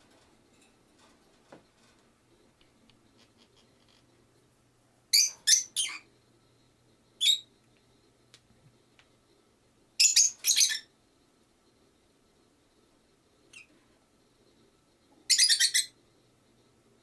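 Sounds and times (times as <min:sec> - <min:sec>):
parrot chirping: 0:05.1 - 0:06.1, 0:07.2 - 0:07.5, 0:10.0 - 0:10.9, 0:15.3 - 0:15.9.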